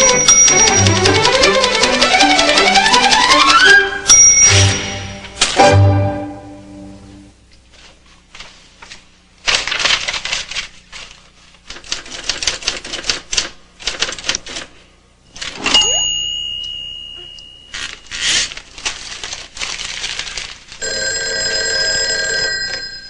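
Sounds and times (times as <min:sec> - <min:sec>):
typewriter bell ding: 0:00.0 - 0:02.7, 0:04.0 - 0:05.2, 0:15.6 - 0:18.1
typewriter keys clattering: 0:00.0 - 0:03.6, 0:09.4 - 0:14.7, 0:17.7 - 0:20.8
typewriter carriage return strike: 0:00.0 - 0:05.7.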